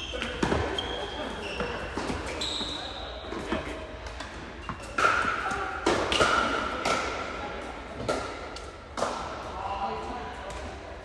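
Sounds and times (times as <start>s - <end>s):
racket striking tennis ball: 4.1s - 7.2s.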